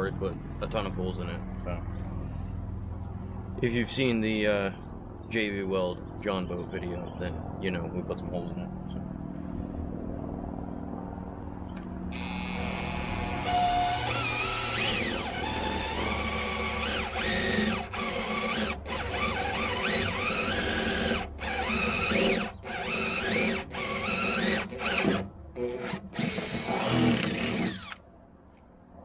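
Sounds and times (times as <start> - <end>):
power drill boring holes: 12.2 - 28.0.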